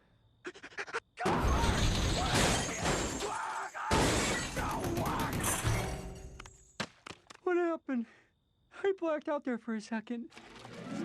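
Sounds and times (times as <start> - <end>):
crashing and shattering: 1.3 - 6.3.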